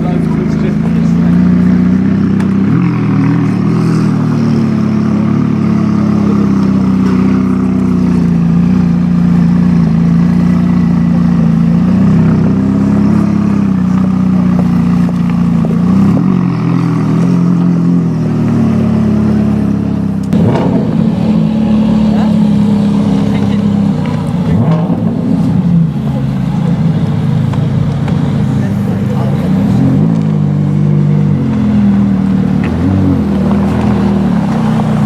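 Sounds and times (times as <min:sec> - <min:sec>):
car engine running: 0:00.0 - 0:35.0
exhaust crack: 0:00.0 - 0:35.0.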